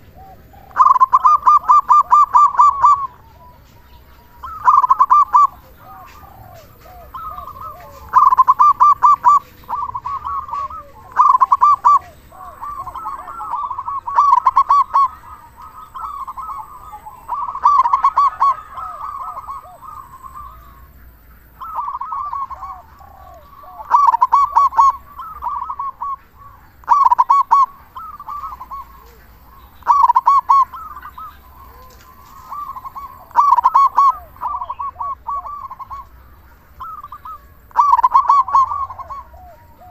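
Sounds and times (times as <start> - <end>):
dove cooing: 0.0 - 39.9.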